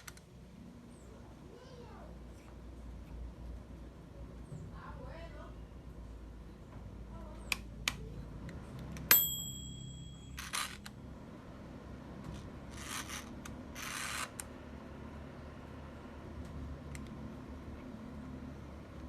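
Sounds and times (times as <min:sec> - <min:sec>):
metallic clink: 0:09.1 - 0:10.9.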